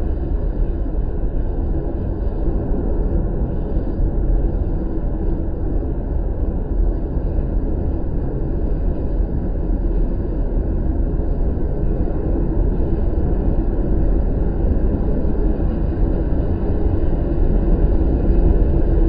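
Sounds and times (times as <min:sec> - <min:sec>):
storm wind buffeting microphone: 0:00.0 - 0:19.0.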